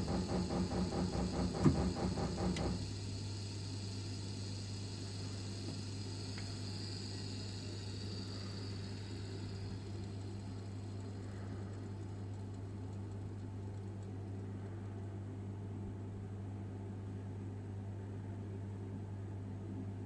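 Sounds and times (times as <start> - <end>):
radiator pipes knocking: 0.0 - 3.0
pump humming: 0.0 - 13.2.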